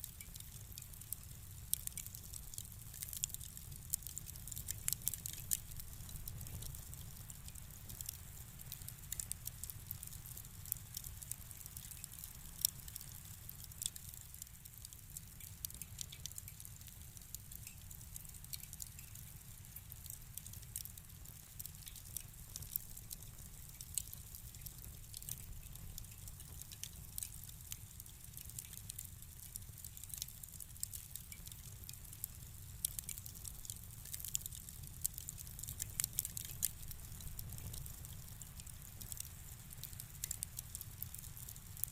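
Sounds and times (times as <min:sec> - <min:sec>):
wood fire crackling: 0:00.0 - 0:41.9.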